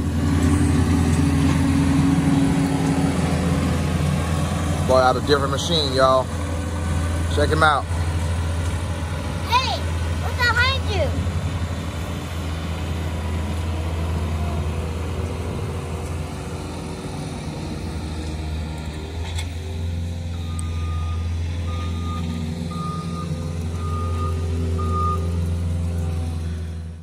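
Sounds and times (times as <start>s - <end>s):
diesel engine running: 0.0s - 27.0s
back-up alarm beeps: 20.4s - 25.3s.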